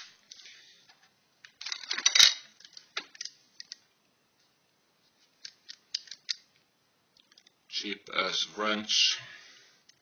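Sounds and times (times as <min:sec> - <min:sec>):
tools and metal hardware clinking: 0:01.6 - 0:03.8.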